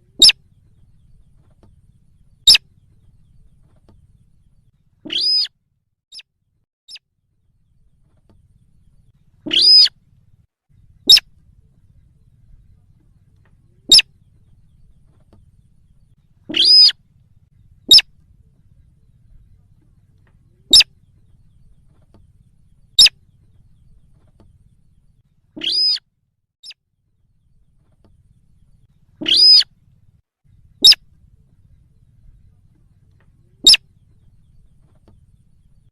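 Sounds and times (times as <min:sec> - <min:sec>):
harsh bird calls: 0:00.0 - 0:05.5, 0:08.7 - 0:10.0, 0:13.8 - 0:17.0, 0:17.8 - 0:18.1, 0:20.5 - 0:21.9, 0:22.6 - 0:24.3, 0:25.5 - 0:26.0, 0:28.3 - 0:29.7, 0:30.5 - 0:35.9
short sharp bird notes: 0:02.4 - 0:03.4, 0:05.0 - 0:05.5, 0:09.4 - 0:10.0, 0:16.4 - 0:17.0, 0:25.6 - 0:26.0, 0:29.2 - 0:29.7, 0:33.6 - 0:34.0.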